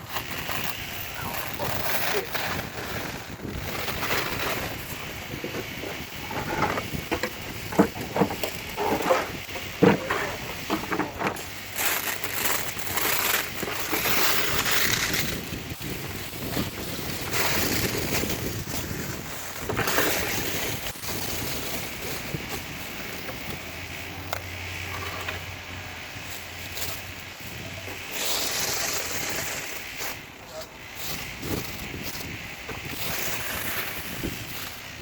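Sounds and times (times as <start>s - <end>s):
plastic wrapping crinkling: 0.0s - 24.6s
wind on microphone: 0.0s - 35.0s.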